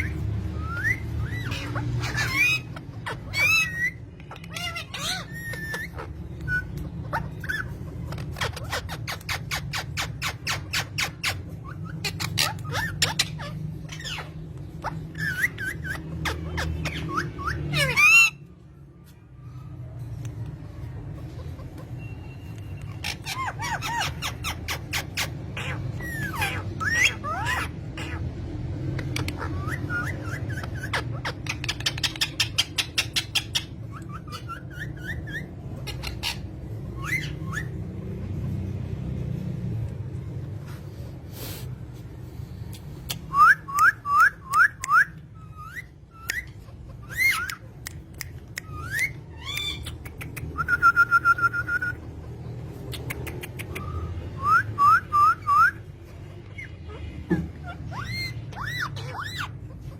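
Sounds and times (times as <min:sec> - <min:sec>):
parrot harsh squawk: 0:00.0 - 0:18.6, 0:21.0 - 0:38.2, 0:43.3 - 0:50.8, 0:56.5 - 0:59.9
parrots chirping and whistling: 0:00.0 - 0:59.9.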